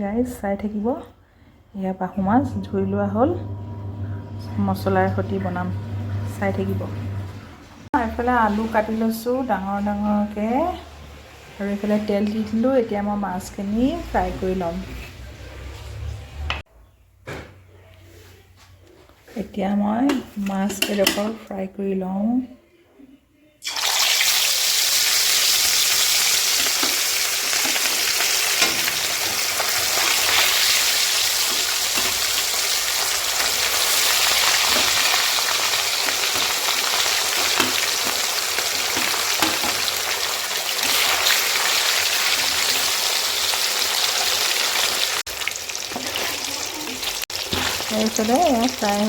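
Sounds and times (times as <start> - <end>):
fish frying in hot oil: 23.6 - 49.0.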